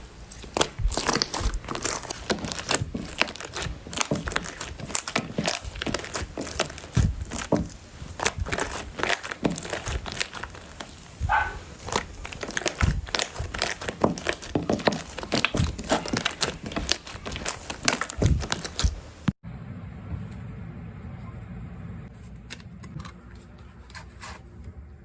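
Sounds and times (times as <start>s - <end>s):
slime squeezed with sticky crackles: 0.3s - 19.3s.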